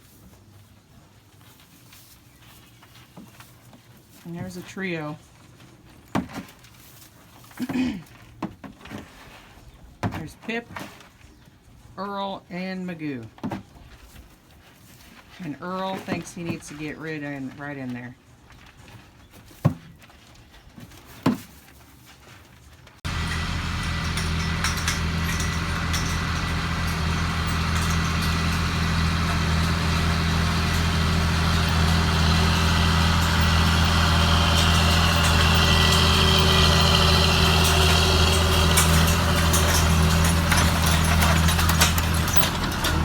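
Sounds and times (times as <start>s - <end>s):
tractor diesel engine running: 23.0s - 43.0s.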